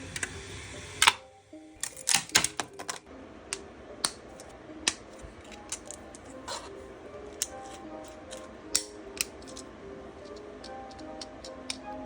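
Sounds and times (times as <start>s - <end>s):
plastic toy clicking: 1.8s - 6.3s, 7.4s - 11.9s.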